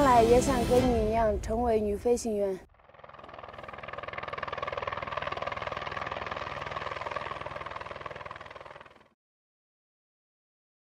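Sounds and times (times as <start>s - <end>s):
helicopter rotor chopping: 2.6s - 9.2s.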